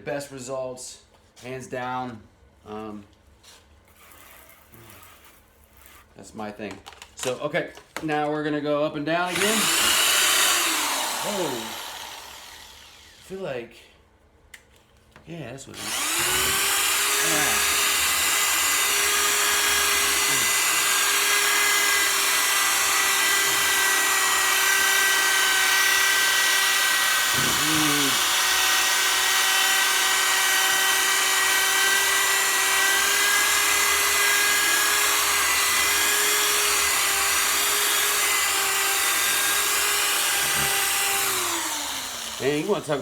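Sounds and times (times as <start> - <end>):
power drill sanding whine: 9.3 - 13.4, 15.8 - 43.0.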